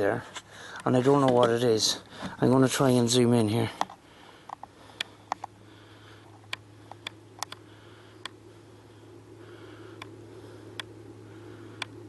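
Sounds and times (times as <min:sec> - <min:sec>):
steady low hum: 0:00.0 - 0:12.0
faint soft breathing: 0:00.1 - 0:00.9, 0:01.9 - 0:02.4, 0:03.6 - 0:12.0
small sharp handling clicks: 0:06.5 - 0:07.6.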